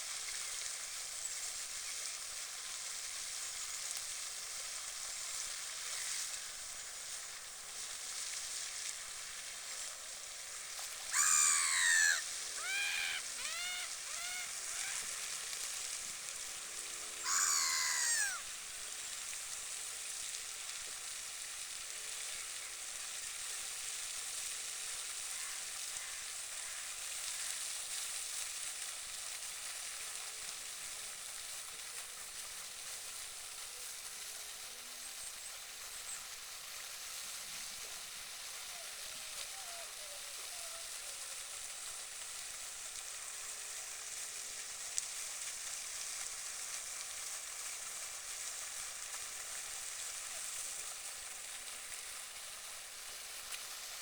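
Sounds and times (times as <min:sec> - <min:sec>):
steady hiss: 0:00.0 - 0:54.0
geese honking: 0:11.2 - 0:15.1, 0:17.2 - 0:18.4.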